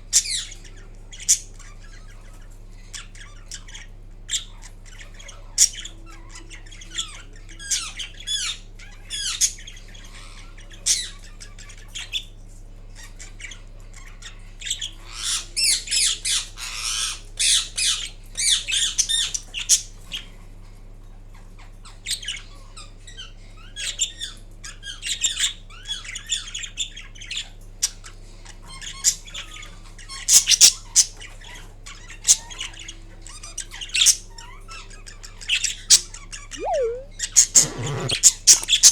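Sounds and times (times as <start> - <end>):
parakeet squawks and chirps: 0.1 - 12.3, 30.4 - 38.9.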